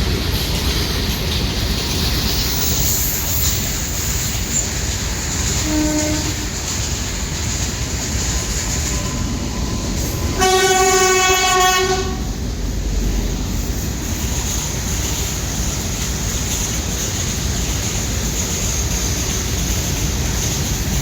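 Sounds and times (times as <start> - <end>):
train wheels rumbling on track: 0.0 - 21.0
locomotive horn: 5.6 - 6.5, 10.3 - 12.3.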